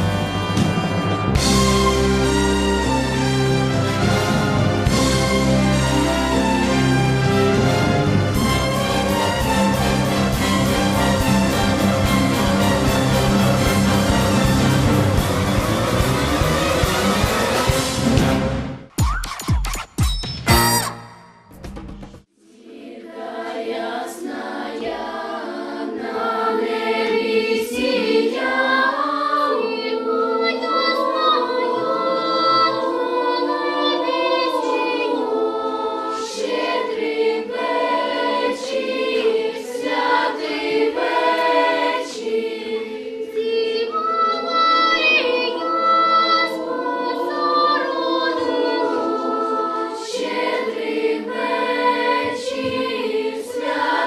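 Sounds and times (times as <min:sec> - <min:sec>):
choir singing: 0:00.0 - 0:18.8, 0:22.4 - 0:54.0.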